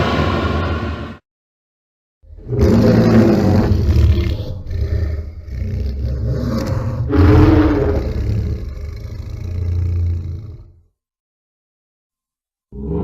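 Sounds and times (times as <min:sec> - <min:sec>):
monster roar: 0:02.3 - 0:10.8, 0:12.7 - 0:13.0.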